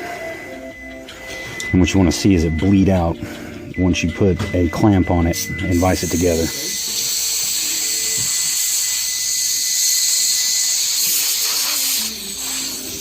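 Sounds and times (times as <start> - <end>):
air blow gun hissing: 5.7 - 13.0.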